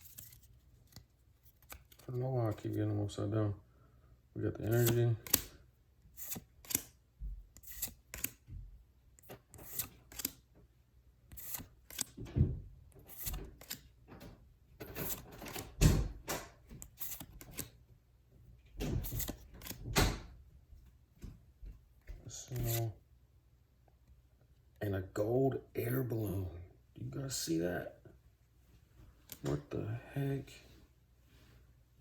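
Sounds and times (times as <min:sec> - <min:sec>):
cards flicking and swishing: 0:00.0 - 0:02.0, 0:07.6 - 0:08.4, 0:09.3 - 0:10.4, 0:11.3 - 0:12.2, 0:13.0 - 0:13.8, 0:16.8 - 0:17.8.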